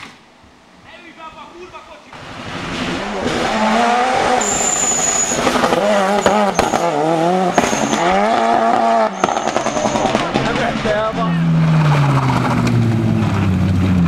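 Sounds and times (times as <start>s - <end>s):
car engine revving hard: 2.2s - 14.0s
tyre squeals: 3.5s - 12.6s.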